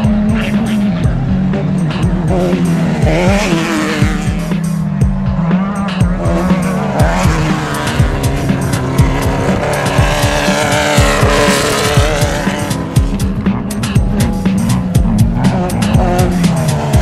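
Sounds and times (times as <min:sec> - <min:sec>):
music playing: 0:00.0 - 0:17.0
vehicle engine revving: 0:00.0 - 0:17.0.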